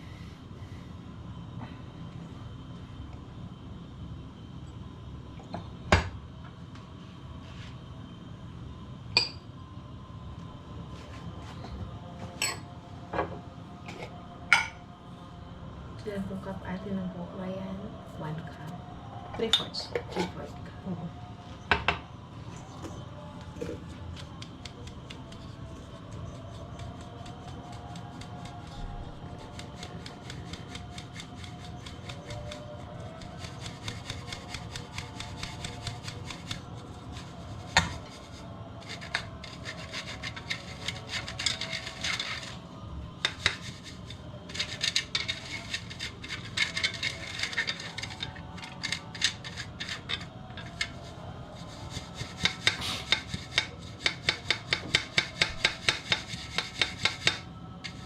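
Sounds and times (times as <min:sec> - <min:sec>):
utensil rubbing and scraping: 0:23.4 - 0:58.0.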